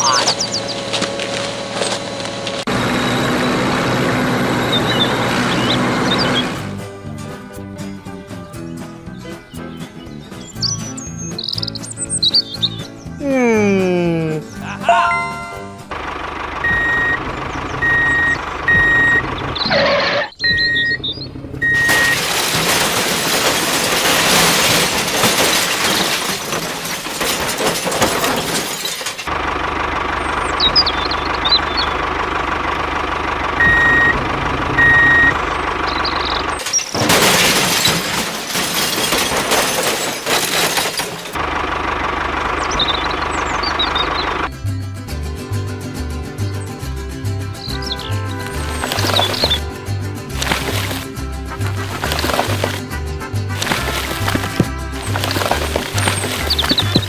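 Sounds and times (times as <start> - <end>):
vehicle engine running: 0.0 - 8.3, 9.7 - 57.0
reversing alarm beeping: 16.6 - 22.2, 33.6 - 36.4.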